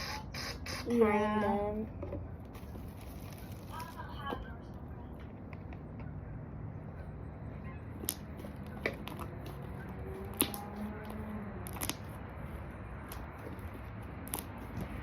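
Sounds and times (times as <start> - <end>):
steady low hum: 0.0 - 15.0
sharp clicks and pops: 11.6 - 12.0, 14.2 - 14.9.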